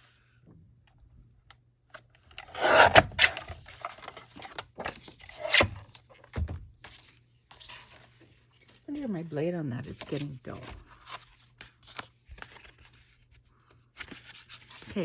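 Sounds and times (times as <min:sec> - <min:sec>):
paper trimmer blade cutting paper: 0:02.4 - 0:03.6.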